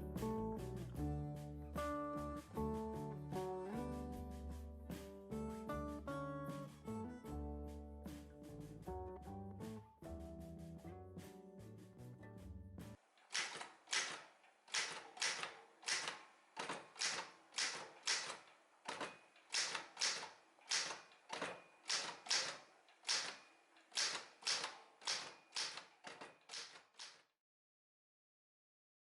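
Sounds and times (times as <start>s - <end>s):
background music: 0.0s - 13.0s
manual typewriter keystrokes: 13.3s - 27.3s.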